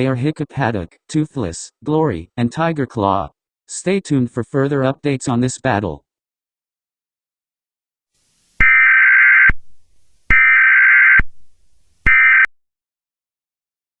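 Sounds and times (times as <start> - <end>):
warbling two-tone data bursts: 8.6 - 9.6, 10.3 - 11.2.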